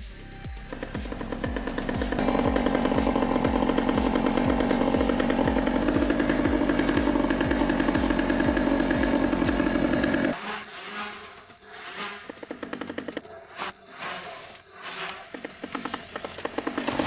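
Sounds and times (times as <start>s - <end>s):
background music with low beat: 0.0s - 10.4s
chainsaw running: 0.2s - 17.0s.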